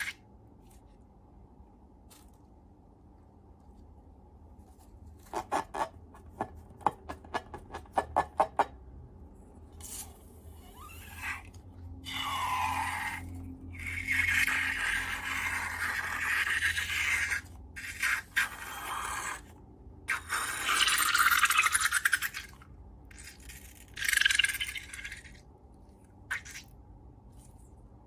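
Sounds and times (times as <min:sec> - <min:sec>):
slime scraping and rubbing by hand: 0:00.0 - 0:01.2, 0:03.6 - 0:06.8.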